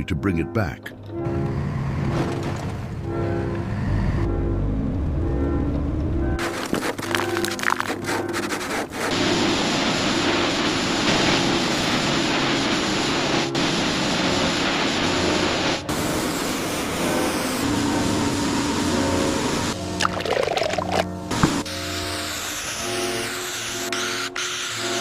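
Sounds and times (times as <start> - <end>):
background music: 0.0 - 9.4, 17.0 - 25.0.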